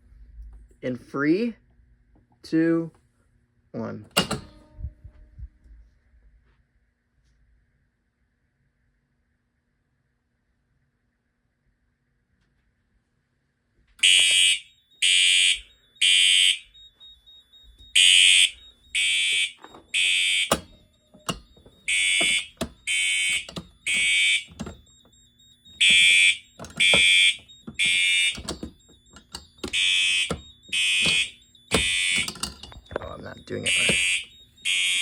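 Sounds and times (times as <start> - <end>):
fire alarm beeps: 4.1 - 5.0, 14.0 - 35.0.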